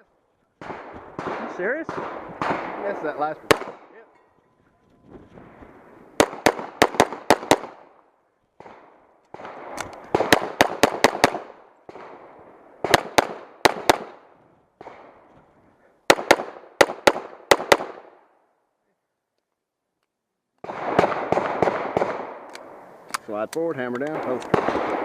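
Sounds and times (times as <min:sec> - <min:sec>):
rapid pistol shots: 0:00.6 - 0:03.9, 0:06.2 - 0:07.9, 0:08.6 - 0:14.2, 0:16.1 - 0:18.2, 0:20.6 - 0:22.5, 0:24.1 - 0:25.0.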